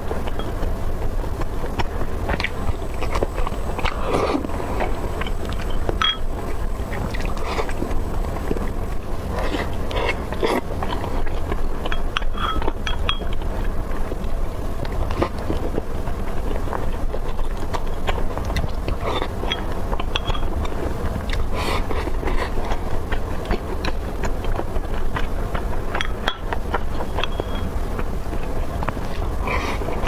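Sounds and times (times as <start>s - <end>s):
low rumble: 0.0s - 9.2s
chewing and crunching food: 0.0s - 14.2s, 14.8s - 30.0s.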